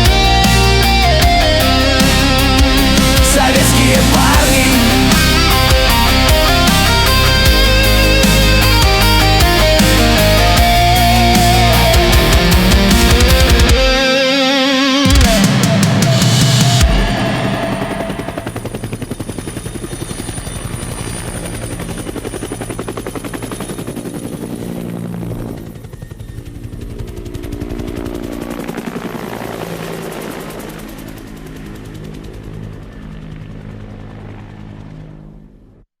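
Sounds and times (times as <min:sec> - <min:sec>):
high turbine whine: 0:00.0 - 0:34.9
helicopter rotor chop: 0:00.0 - 0:35.8
low held tones: 0:09.0 - 0:19.0.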